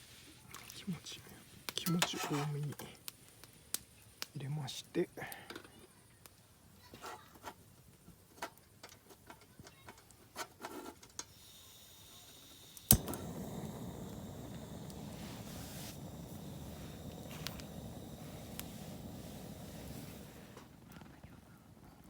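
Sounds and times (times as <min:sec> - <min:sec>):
camp burner rushing: 0:10.3 - 0:21.2
burner ignition click: 0:11.2 - 0:20.8.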